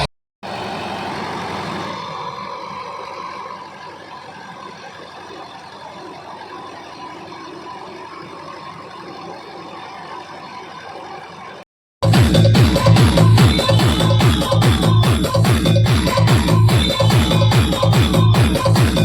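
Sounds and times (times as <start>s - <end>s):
engine hum: 0.0s - 6.6s.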